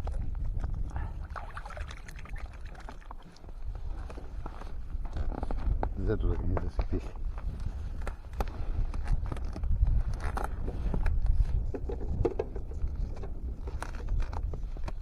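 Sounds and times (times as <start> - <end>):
wind rumbling on microphone: 0.0 - 15.0.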